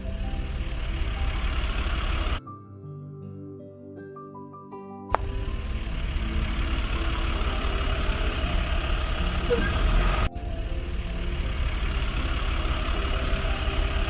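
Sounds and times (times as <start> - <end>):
diesel engine rumble: 0.0 - 2.4, 5.2 - 14.0.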